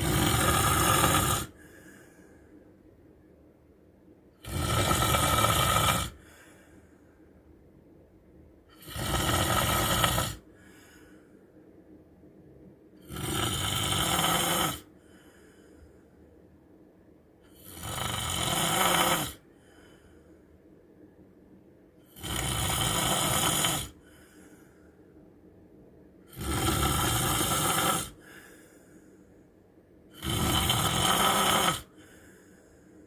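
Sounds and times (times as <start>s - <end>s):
man snoring: 0.0s - 1.8s, 4.4s - 6.5s, 8.7s - 10.7s, 13.0s - 14.9s, 17.5s - 19.5s, 22.1s - 24.1s, 26.3s - 28.6s, 30.1s - 32.2s
faint breath out: 1.5s - 2.7s, 6.1s - 7.3s, 10.4s - 11.5s, 14.9s - 16.3s, 19.5s - 20.6s, 24.0s - 25.2s, 28.2s - 29.6s, 31.9s - 33.0s.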